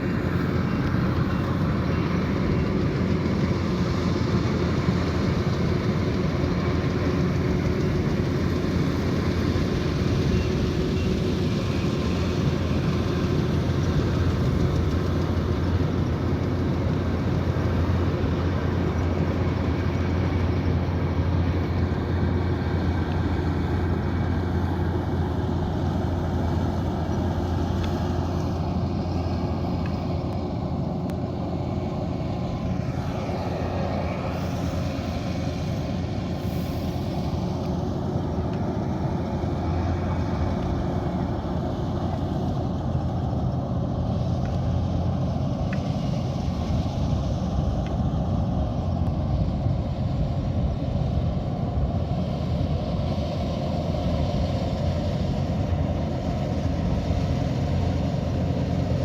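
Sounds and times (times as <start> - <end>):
diesel engine droning: 0.0 - 59.0.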